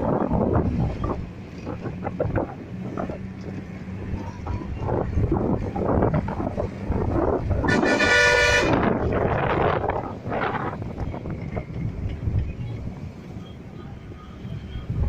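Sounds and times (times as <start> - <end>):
moving vehicle noise: 0.0 - 15.0
vehicle horn: 7.6 - 9.0.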